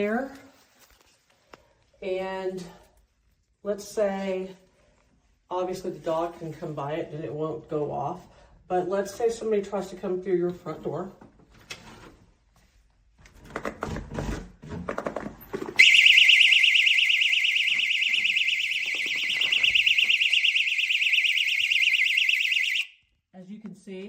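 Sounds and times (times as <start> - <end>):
shrill warbling alarm siren: 15.8 - 23.0.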